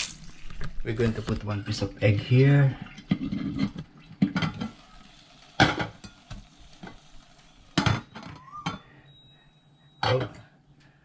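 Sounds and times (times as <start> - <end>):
egg sizzling in a pan: 2.4 - 8.4.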